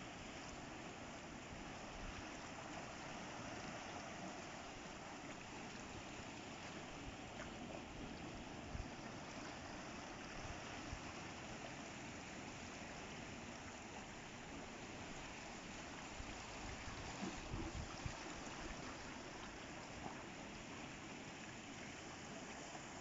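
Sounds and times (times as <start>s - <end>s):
sea water washing among rocks: 15.8s - 20.4s.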